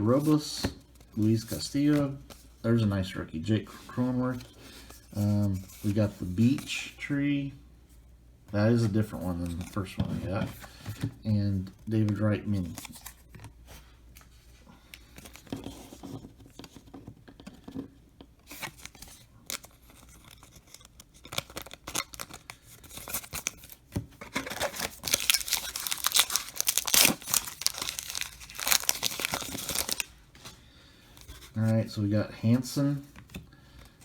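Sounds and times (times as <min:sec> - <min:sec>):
soft card handling: 0:00.0 - 0:02.6, 0:03.4 - 0:07.2, 0:08.5 - 0:34.0
wrapper tearing and crinkling: 0:18.5 - 0:30.1.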